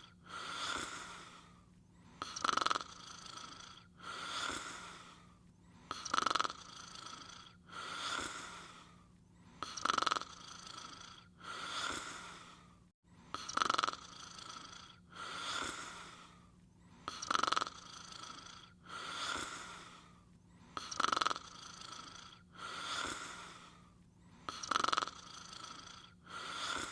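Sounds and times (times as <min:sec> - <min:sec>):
soft out-breath: 0:00.0 - 0:02.4, 0:03.4 - 0:06.1, 0:07.0 - 0:09.8, 0:10.7 - 0:13.5, 0:14.4 - 0:17.3, 0:18.2 - 0:21.0, 0:21.9 - 0:24.7, 0:25.6 - 0:26.9
person snoring: 0:00.0 - 0:09.0, 0:09.6 - 0:16.5, 0:17.1 - 0:20.1, 0:20.8 - 0:23.9, 0:24.5 - 0:26.9.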